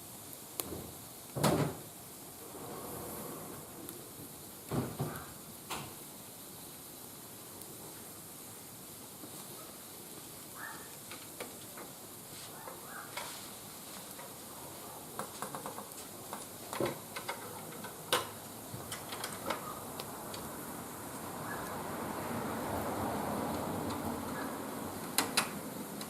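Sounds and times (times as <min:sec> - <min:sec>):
wood fire crackling and hissing: 0:00.0 - 0:26.0
sharp pops of fire: 0:00.1 - 0:02.2, 0:03.8 - 0:08.2, 0:09.1 - 0:21.8.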